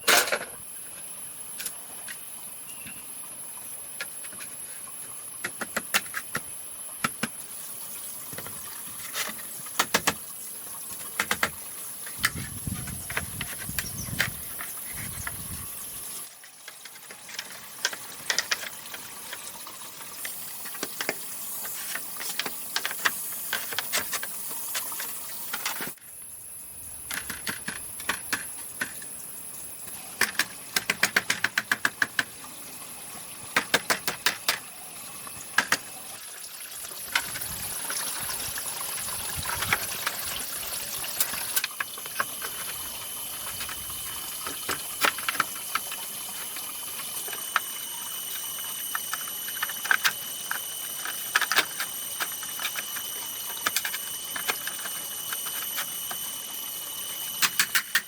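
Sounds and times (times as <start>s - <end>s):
steady high-pitched hiss: 0.0s - 31.2s
knocks and clicks on bamboo: 9.8s - 10.2s, 11.0s - 11.6s, 30.2s - 32.3s, 33.6s - 34.6s.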